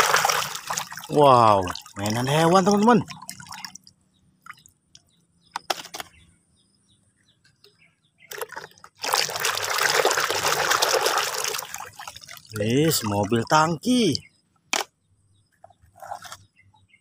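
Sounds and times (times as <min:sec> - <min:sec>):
water pouring: 0:00.0 - 0:03.9, 0:08.3 - 0:13.6
water trickling: 0:00.0 - 0:04.8, 0:08.3 - 0:14.0
water drips: 0:00.0 - 0:05.0, 0:09.0 - 0:13.7.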